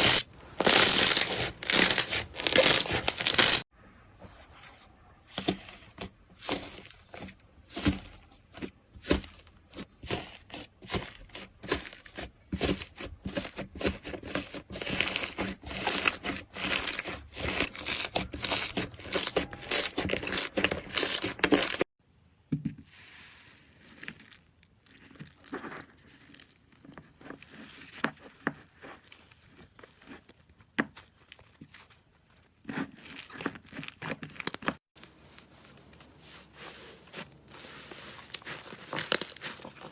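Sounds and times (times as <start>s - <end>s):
slime squished by hands: 0.0s - 3.6s.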